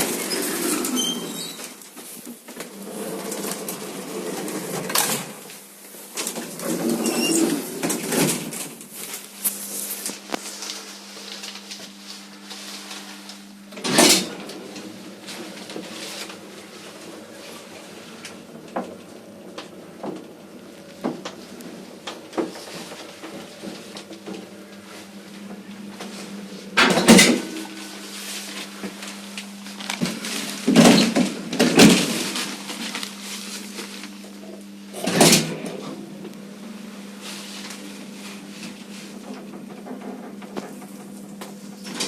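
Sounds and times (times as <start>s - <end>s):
lift machinery hum: 0.0s - 42.0s
lift doors clattering and banging: 13.8s - 17.0s, 26.8s - 27.9s, 30.6s - 32.4s.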